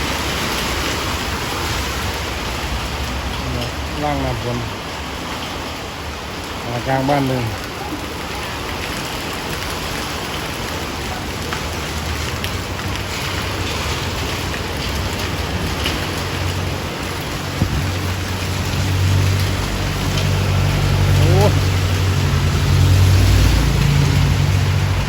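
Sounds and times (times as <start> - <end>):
heavy rain falling: 0.0 - 25.0
low engine hum: 11.8 - 25.0.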